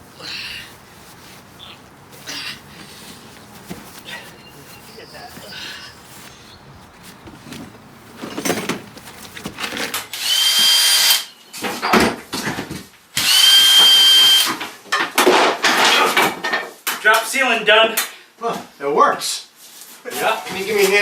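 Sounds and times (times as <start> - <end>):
power drill whining: 4.1 - 11.3, 13.2 - 14.5
parts knocking and clattering: 5.3 - 10.3.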